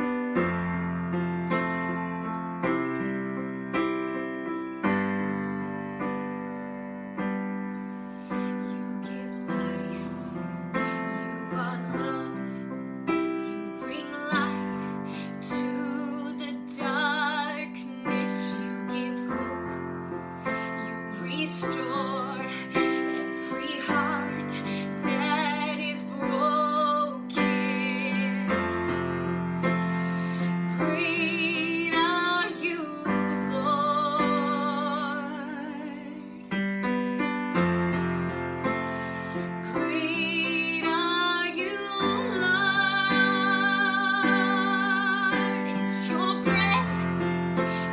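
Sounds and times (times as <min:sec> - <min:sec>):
piano chords: 0:00.0 - 0:47.9
woman singing worship song: 0:08.3 - 0:19.8, 0:20.6 - 0:28.9, 0:30.3 - 0:36.4, 0:39.6 - 0:47.1.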